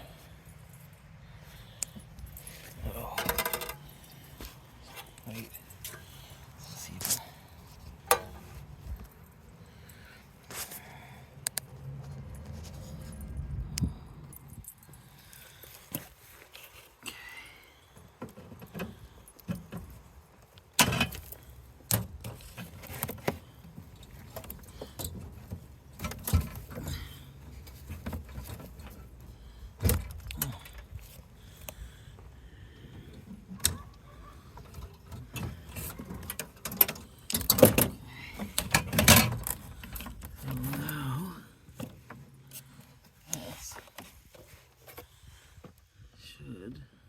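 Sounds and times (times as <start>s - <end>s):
metallic clinks and rattles: 0.2s - 7.2s, 14.2s - 16.9s.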